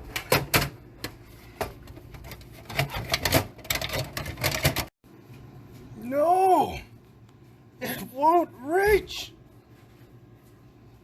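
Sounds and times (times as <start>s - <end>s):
computer parts clicking and knocking: 0.0s - 0.8s, 1.9s - 4.9s.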